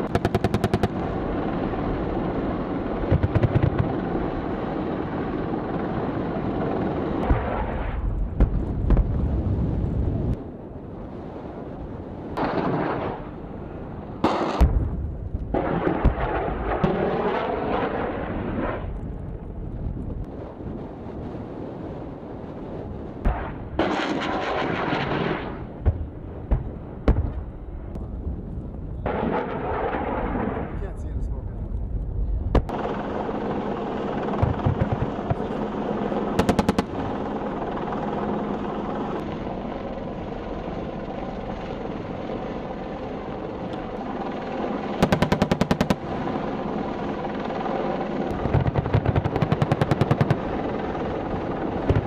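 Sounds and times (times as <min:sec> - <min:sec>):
helicopter noise: 0:00.0 - 0:52.0
rapid gunfire: 0:45.0 - 0:46.1, 0:48.4 - 0:50.5.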